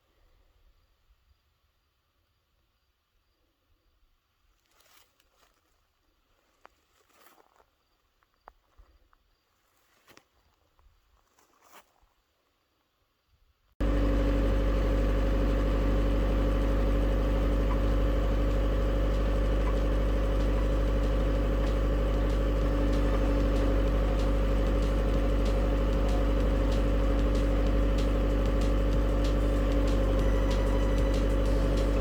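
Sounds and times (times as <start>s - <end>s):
engine idling: 13.8s - 32.0s.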